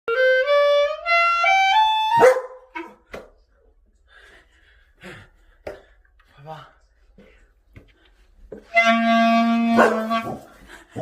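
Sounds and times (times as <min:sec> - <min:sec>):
clarinet playing rising notes: 0:00.1 - 0:02.2, 0:08.6 - 0:10.6
dog barking: 0:02.2 - 0:03.0, 0:09.8 - 0:10.4.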